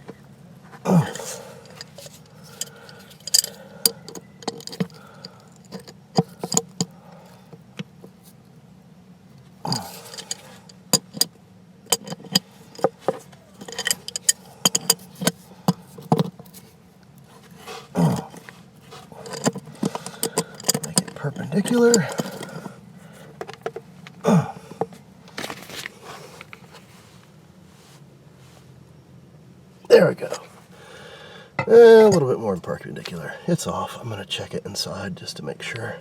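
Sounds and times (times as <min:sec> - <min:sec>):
person grunting: 0:00.8 - 0:01.6, 0:09.6 - 0:10.0, 0:18.0 - 0:18.4, 0:24.2 - 0:24.8
wrench metal clicks and clanks: 0:01.2 - 0:06.9, 0:09.7 - 0:11.3, 0:11.9 - 0:16.6, 0:19.2 - 0:22.7.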